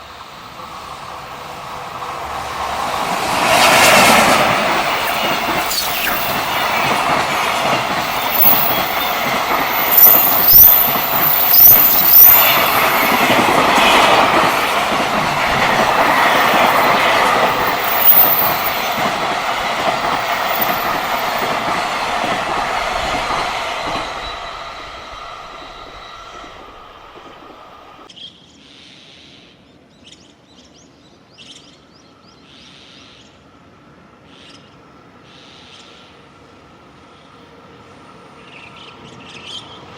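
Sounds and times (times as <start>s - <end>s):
train wheels clattering: 2.2s - 27.5s
high-pitched wheel squeal: 8.1s - 13.1s, 17.6s - 18.8s, 23.2s - 28.1s.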